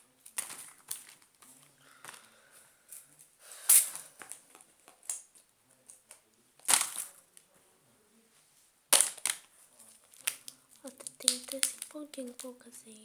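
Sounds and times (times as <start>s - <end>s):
plastic rustling and crinkling: 0.0s - 7.6s, 8.4s - 13.0s
small plastic clicks: 8.9s - 12.6s.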